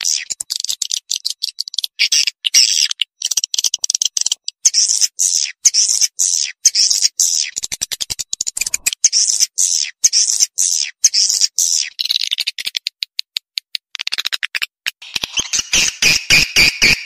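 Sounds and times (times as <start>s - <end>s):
buzzy high bird chirps: 0.0s - 12.8s, 15.0s - 17.0s.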